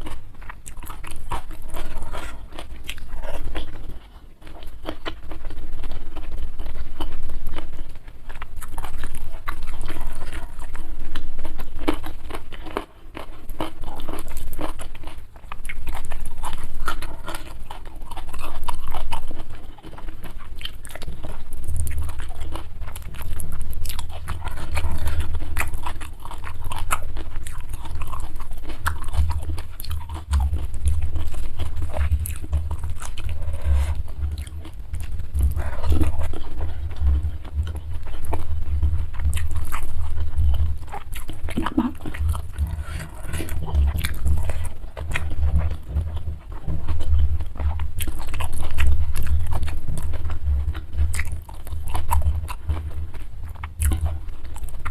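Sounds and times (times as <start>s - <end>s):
person chewing and crunching: 0.0s - 54.9s
low rumble: 30.3s - 52.9s.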